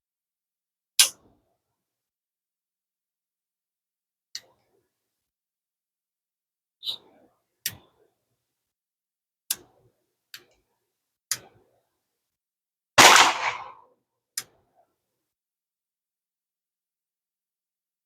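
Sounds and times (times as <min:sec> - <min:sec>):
loud gunshot: 0:13.0 - 0:13.8
short sharp cracks: 0:13.0 - 0:13.8.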